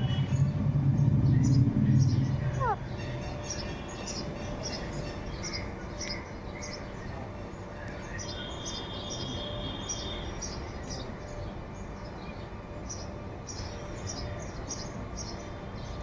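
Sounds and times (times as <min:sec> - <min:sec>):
birds chirping: 0:00.0 - 0:16.0.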